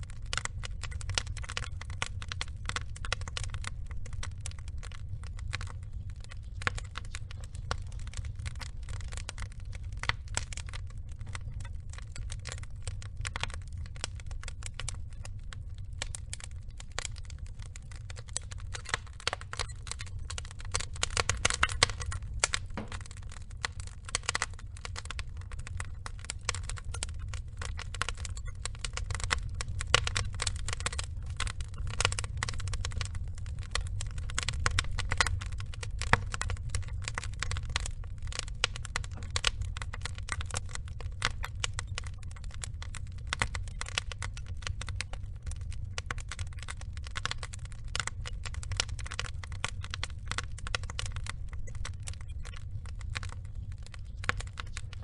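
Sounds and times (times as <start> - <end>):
logs crackling and popping: 0.0 - 55.0
low rumble of flames: 0.0 - 55.0.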